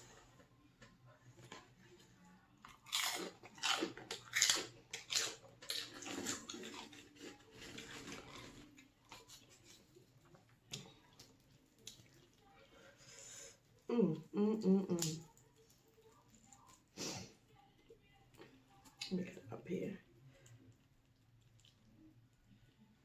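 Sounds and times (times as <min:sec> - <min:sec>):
soft chewing: 0:00.0 - 0:23.0
crunching crispy snacks: 0:02.6 - 0:09.9.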